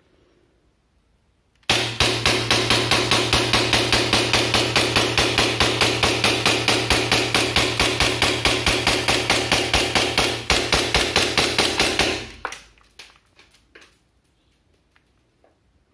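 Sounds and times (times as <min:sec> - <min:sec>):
airsoft pistol rapid firing: 0:01.6 - 0:12.5.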